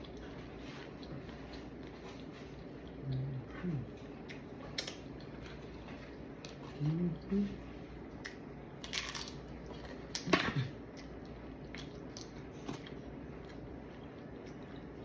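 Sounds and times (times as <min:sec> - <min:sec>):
chewing: 0:10.9 - 0:15.0.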